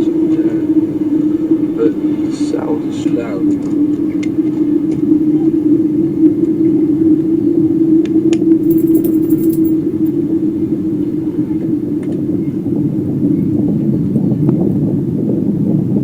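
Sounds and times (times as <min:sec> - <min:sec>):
rumbling undertone: 0:00.0 - 0:08.7
loud low drone in the sky: 0:00.0 - 0:16.0.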